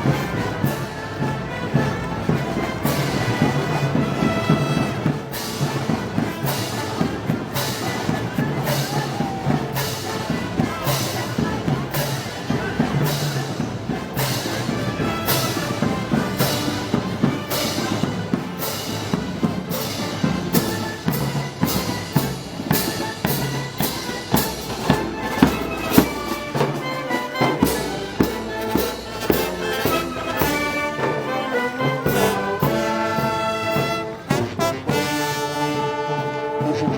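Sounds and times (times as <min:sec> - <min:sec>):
sharp percussion strikes: 0:00.0 - 0:35.7
brass band playing: 0:00.0 - 0:36.9.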